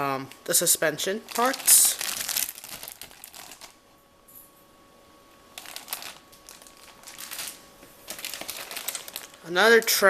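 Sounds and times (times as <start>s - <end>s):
plastic bag crinkling: 0.6s - 3.8s, 5.5s - 10.0s.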